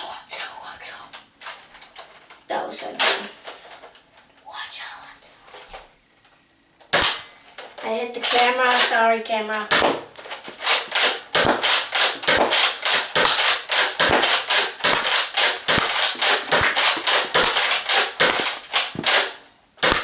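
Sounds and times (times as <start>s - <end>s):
toy dart blaster clacking: 6.9s - 20.0s.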